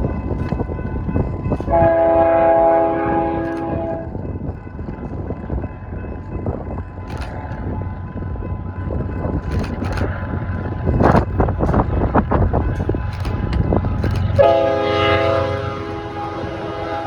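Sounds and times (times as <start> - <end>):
train rumbling: 0.0 - 17.0
wind buffeting microphone: 0.0 - 17.0
train horn blasts: 1.7 - 4.1, 14.4 - 17.0.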